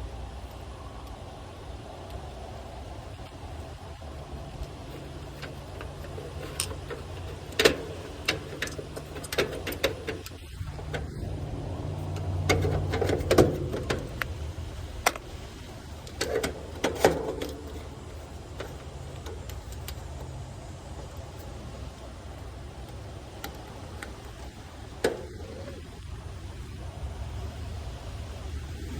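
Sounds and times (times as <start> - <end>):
steady low hum: 0.0 - 28.9
clicks and knocks of tools: 4.5 - 21.6.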